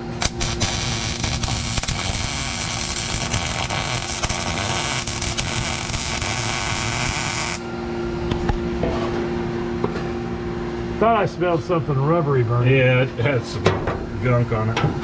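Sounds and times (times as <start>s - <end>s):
welder crackling hiss: 0.0s - 7.6s
fan humming: 0.0s - 15.0s.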